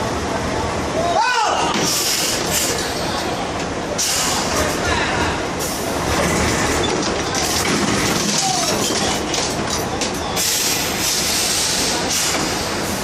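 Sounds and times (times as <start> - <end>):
heavy machinery rumbling and clattering: 1.7 - 13.0.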